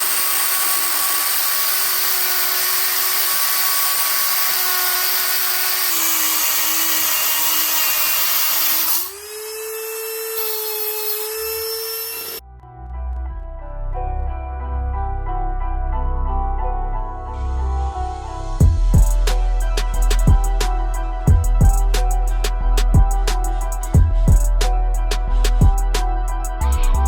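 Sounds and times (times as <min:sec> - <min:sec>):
small electric motor whining: 0:00.0 - 0:12.4.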